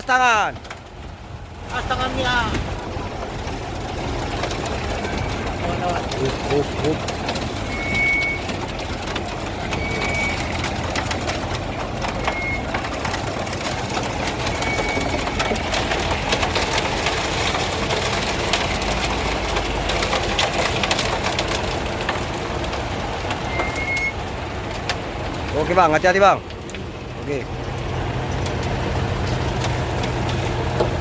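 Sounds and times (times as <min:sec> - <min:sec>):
heavy truck engine running: 0:00.0 - 0:31.0
rattles and knocks: 0:00.4 - 0:31.0
short high beep: 0:23.5 - 0:24.1.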